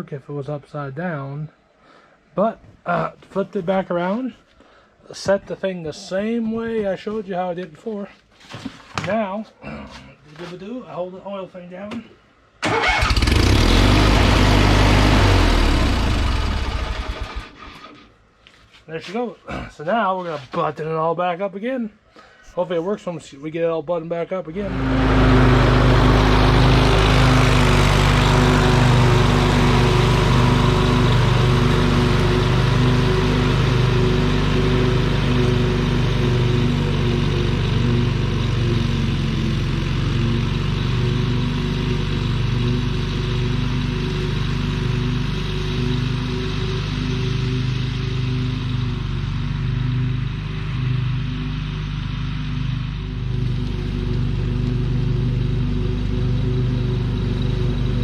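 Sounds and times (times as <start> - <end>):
mower engine running: 12.6 - 18.0, 24.6 - 58.0.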